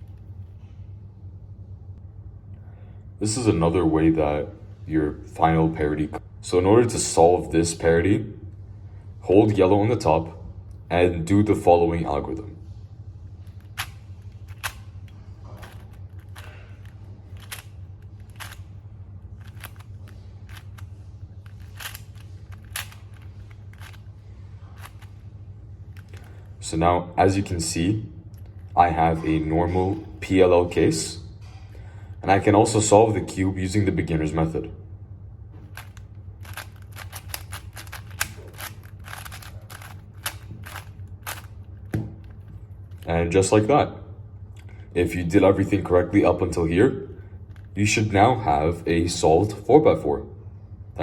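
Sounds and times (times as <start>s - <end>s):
low steady hum: 0.0s - 51.0s
plastic puzzle cube clicking: 13.6s - 14.9s, 15.6s - 18.7s, 19.4s - 24.1s, 24.8s - 25.1s, 35.7s - 42.4s.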